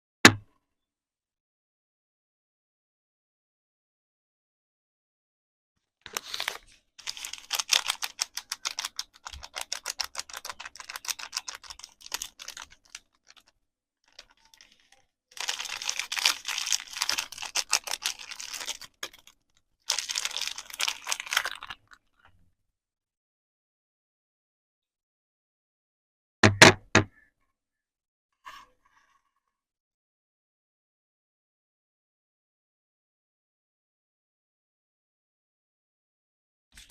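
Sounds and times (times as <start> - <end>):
packaging crinkling: 6.1 - 22.0.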